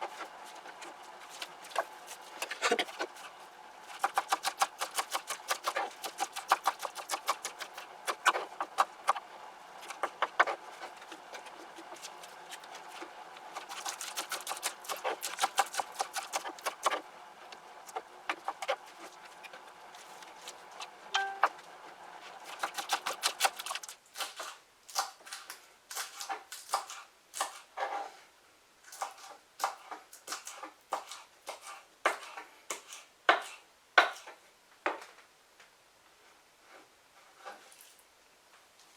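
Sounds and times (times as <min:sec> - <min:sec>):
steady background hum: 0:00.0 - 0:24.0
knife chopping on cutting board: 0:29.0 - 0:34.4.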